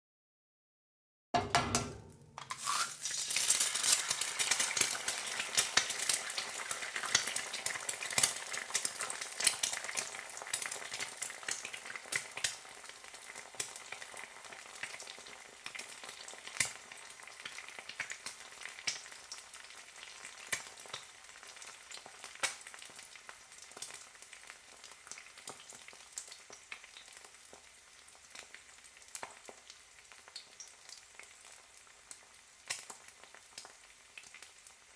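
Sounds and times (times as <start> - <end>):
egg sizzling in a pan: 2.3 - 34.9.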